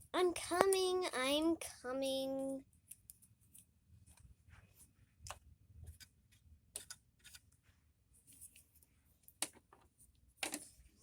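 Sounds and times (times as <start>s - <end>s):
plastic dolls clicking and tapping: 0.2s - 1.4s, 2.0s - 4.3s, 9.2s - 10.7s.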